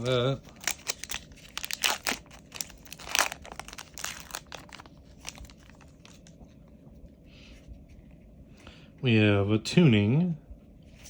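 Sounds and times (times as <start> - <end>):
foil wrapper crinkling and tearing: 0.0 - 6.4.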